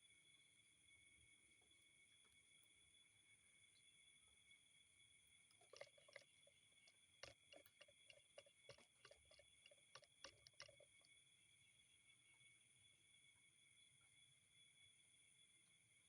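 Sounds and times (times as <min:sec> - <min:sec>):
faint irregular clicks and taps: 0:05.5 - 0:11.1.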